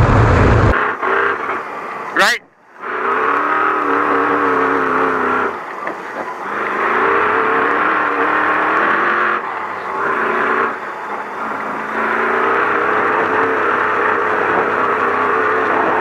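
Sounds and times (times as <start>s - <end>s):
truck engine running hard: 0.0s - 16.0s.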